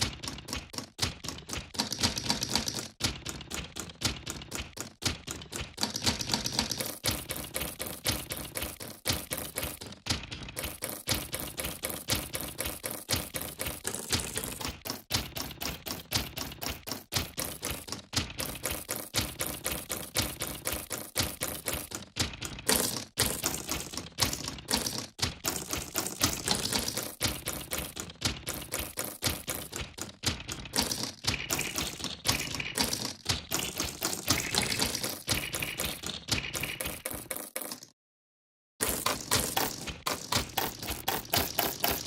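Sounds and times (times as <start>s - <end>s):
rhythmic track of chip clicks: 0.0s - 38.0s, 38.8s - 42.0s.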